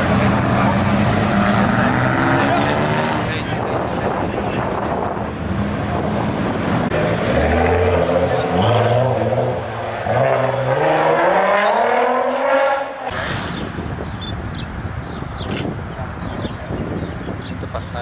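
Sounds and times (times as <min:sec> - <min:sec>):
car engine accelerating hard: 0:00.0 - 0:04.1, 0:05.7 - 0:13.4.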